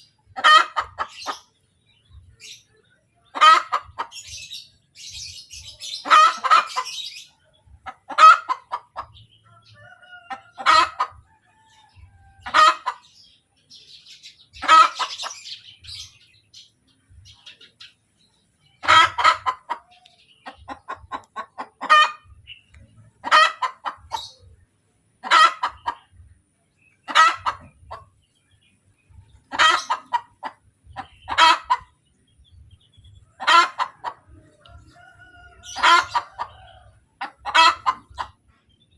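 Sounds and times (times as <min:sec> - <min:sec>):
hen cackling: 0:00.0 - 0:01.5, 0:03.2 - 0:13.3, 0:14.3 - 0:16.2, 0:18.8 - 0:24.6, 0:25.2 - 0:26.2, 0:27.0 - 0:28.1, 0:29.3 - 0:32.0, 0:32.8 - 0:38.4.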